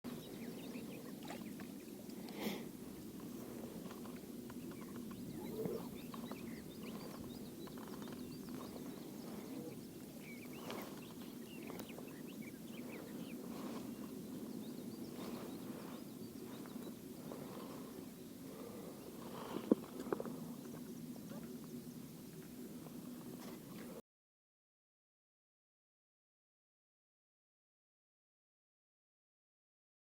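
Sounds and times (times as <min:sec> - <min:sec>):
bird chirps: 0:00.1 - 0:02.0, 0:04.5 - 0:19.6
low background rumble: 0:00.1 - 0:24.0.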